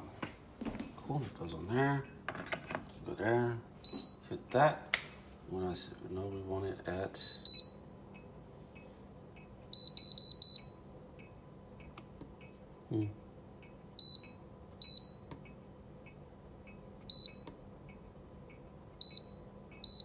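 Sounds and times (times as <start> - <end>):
kettle control panel beeps: 9.8 - 11.4, 14.0 - 15.4, 17.0 - 17.6, 19.0 - 20.0.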